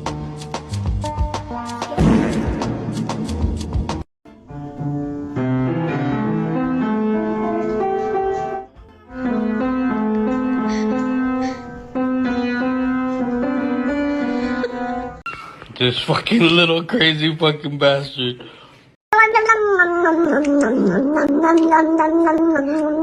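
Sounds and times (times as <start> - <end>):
piano music: 0.8 - 15.2.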